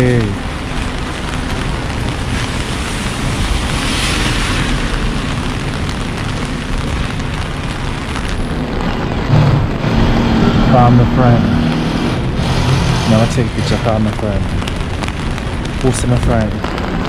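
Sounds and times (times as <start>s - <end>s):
bright hiss: 0.0s - 17.0s
low rumble: 0.0s - 17.0s
rain: 0.0s - 17.0s
traffic on wet pavement: 0.0s - 17.0s.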